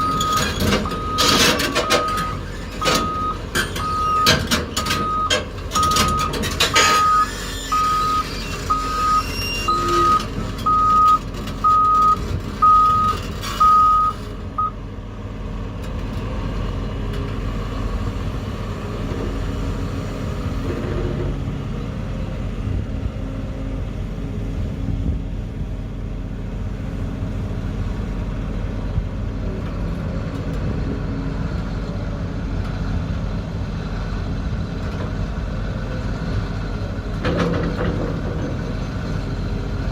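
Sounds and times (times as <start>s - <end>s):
reversing alarm beeping: 0.0s - 14.8s
diesel engine drone: 0.0s - 39.9s.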